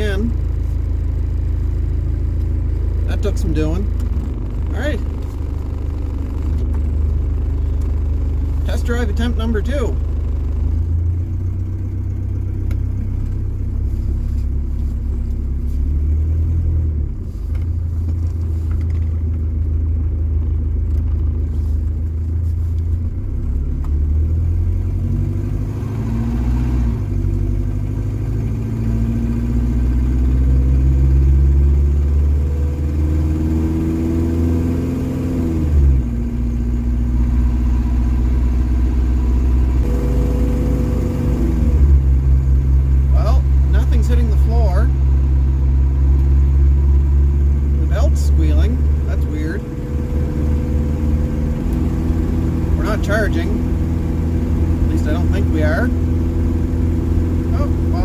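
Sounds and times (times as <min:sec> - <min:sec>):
diesel engine running under load: 0:00.0 - 0:32.4.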